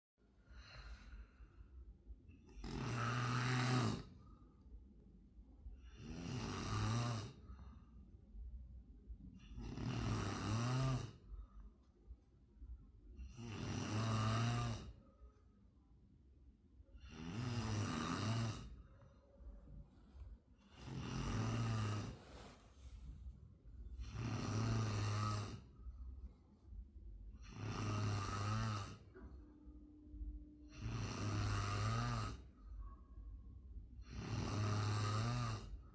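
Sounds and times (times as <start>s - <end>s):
quiet breathing: 0.2s - 35.9s
loud rhythmic snoring: 2.4s - 4.4s, 5.8s - 7.8s, 9.3s - 11.6s, 13.2s - 15.2s, 16.9s - 19.1s, 20.6s - 22.6s, 23.8s - 26.0s, 27.2s - 29.4s, 30.1s - 32.8s, 33.8s - 35.9s.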